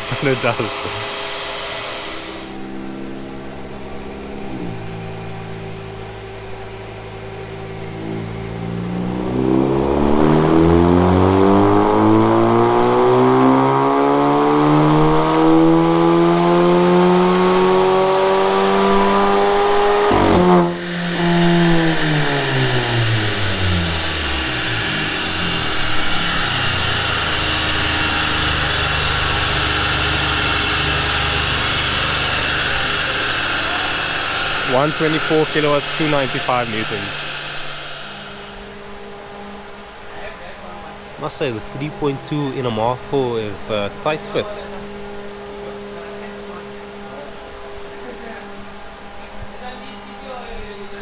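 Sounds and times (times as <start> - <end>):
sharp engine crack: 0.0 - 2.6, 18.5 - 38.7
car engine revving at full throttle: 0.0 - 49.6
dyno rollers winding down: 0.0 - 51.0
steady rushing noise: 20.7 - 44.5.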